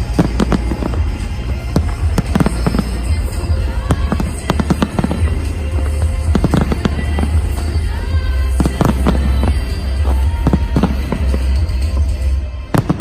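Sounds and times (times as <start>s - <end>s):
fireworks bangs and pops: 0.0s - 13.0s
music playing: 0.0s - 13.0s.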